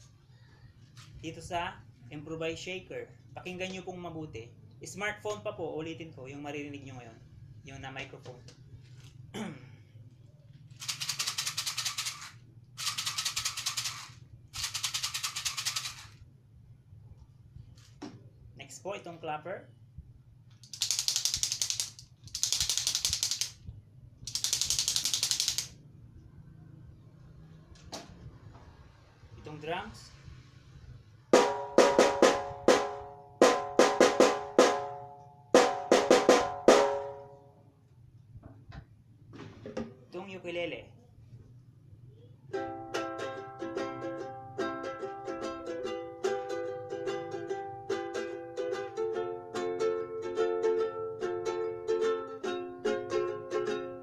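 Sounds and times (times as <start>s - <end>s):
toy clapper clicking rapidly: 10.8s - 16.2s, 20.6s - 23.6s, 24.2s - 25.8s
ukulele strumming chords: 31.4s - 37.4s, 42.5s - 54.0s.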